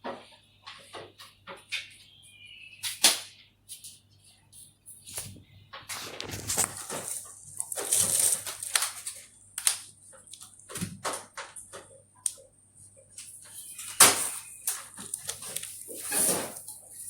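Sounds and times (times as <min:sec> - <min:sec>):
scraping and rubbing: 0:05.0 - 0:08.8, 0:15.0 - 0:17.0.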